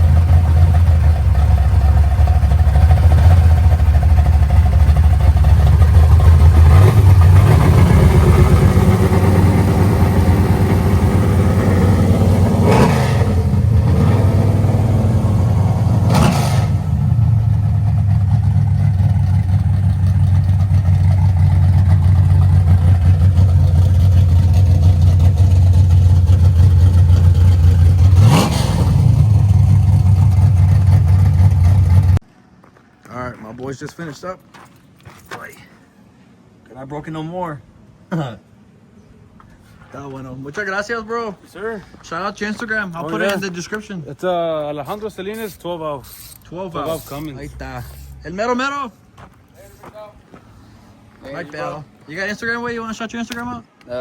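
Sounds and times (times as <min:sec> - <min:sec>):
car engine idling and revving: 0:00.0 - 0:32.2.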